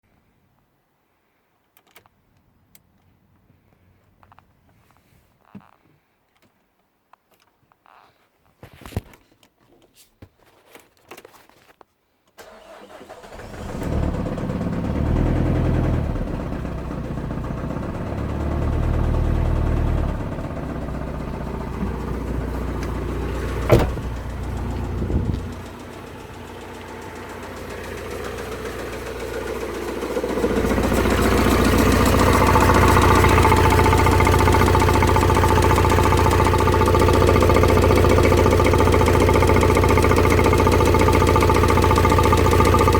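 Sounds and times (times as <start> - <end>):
diesel engine starting and revving: 12.4 - 42.9
engine knock: 13.6 - 42.9.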